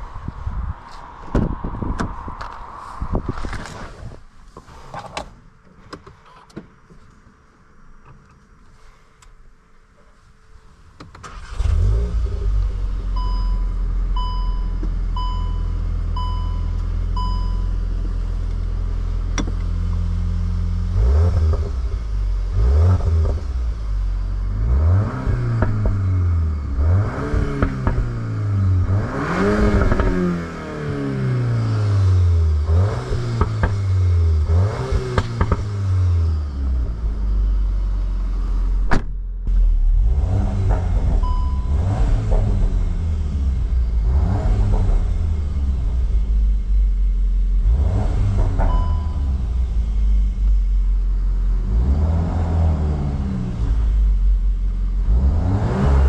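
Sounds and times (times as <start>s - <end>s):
car engine starting and idling: 0.0s - 56.0s
engine revving: 11.3s - 13.4s, 20.0s - 38.8s, 39.4s - 56.0s
exhaust pops: 25.2s - 26.2s, 27.1s - 30.3s, 32.9s - 35.9s, 38.6s - 46.8s, 47.6s - 50.7s.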